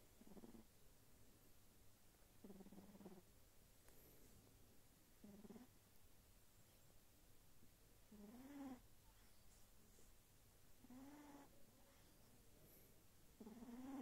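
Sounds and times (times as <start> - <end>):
kitten snoring faintly: 0.1 - 0.7, 2.4 - 3.3, 5.2 - 5.8, 8.1 - 10.1, 10.8 - 14.0.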